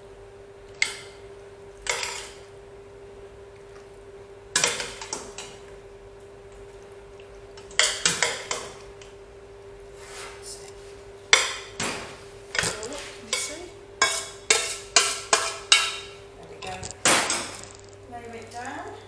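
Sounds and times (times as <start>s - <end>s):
faint steady hum: 0.0s - 19.0s
utensil scraping a saucepan: 9.9s - 11.8s, 12.4s - 18.0s.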